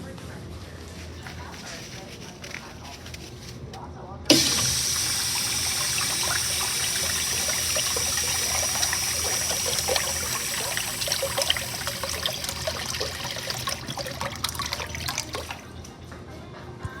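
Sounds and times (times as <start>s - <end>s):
urinal flushing: 4.3s - 15.7s.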